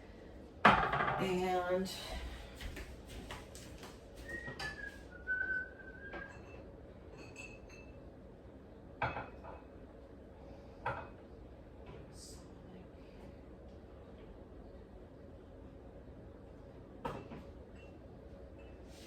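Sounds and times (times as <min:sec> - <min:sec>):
glass clinks: 0:07.2 - 0:08.0.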